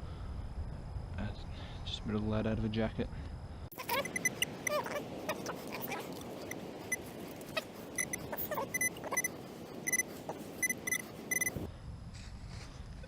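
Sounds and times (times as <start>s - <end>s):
metal detector beeping: 3.7s - 11.7s.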